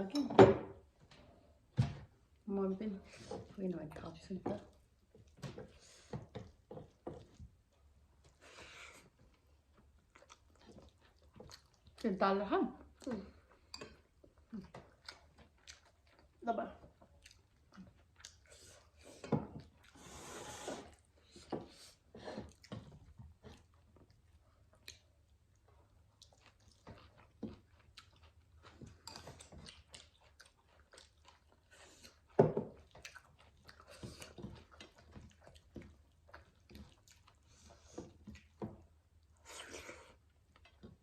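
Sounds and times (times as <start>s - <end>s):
people chewing food: 0.8s - 41.0s.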